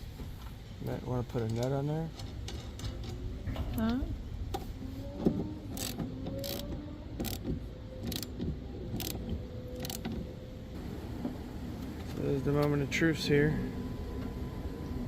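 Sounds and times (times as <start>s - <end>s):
low steady rumble: 0.0s - 15.0s
metal hand tools clicking: 5.8s - 6.6s, 9.8s - 10.0s.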